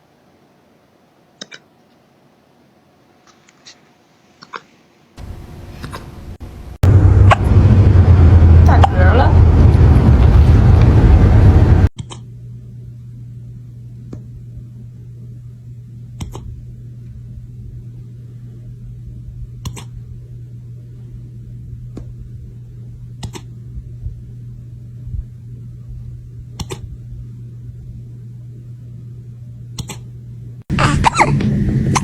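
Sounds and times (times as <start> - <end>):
steady low hum: 5.1 - 32.0
loud noisy passage: 6.8 - 11.9.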